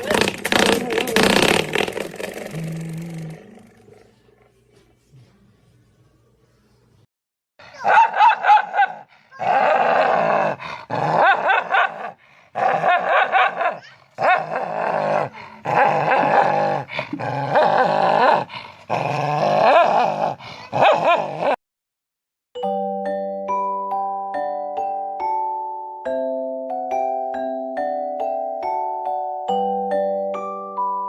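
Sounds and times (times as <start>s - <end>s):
dog growling: 0.0s - 4.8s, 8.9s - 21.6s
dog barking: 7.7s - 9.6s, 11.1s - 14.5s, 20.7s - 21.2s.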